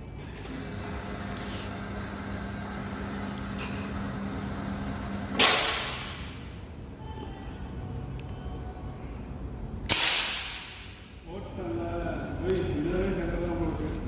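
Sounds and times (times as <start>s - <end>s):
steady low hum: 0.0s - 14.0s
rifle shot: 5.4s - 6.2s, 9.9s - 10.9s.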